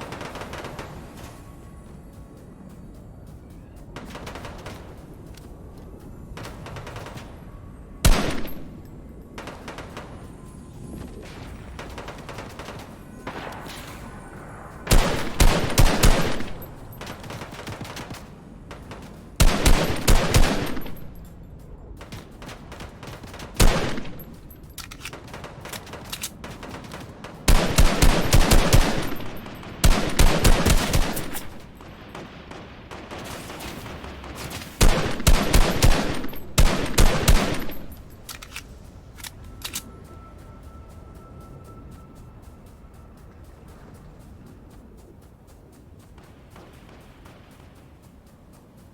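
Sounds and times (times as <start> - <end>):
video game automatic gunfire: 25.2 - 38.0.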